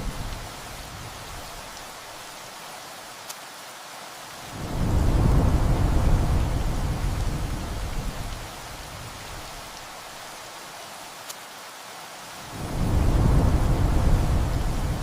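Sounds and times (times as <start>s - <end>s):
rain hiss: 0.0s - 15.0s
thunder rumbling: 4.5s - 9.5s, 12.5s - 15.0s.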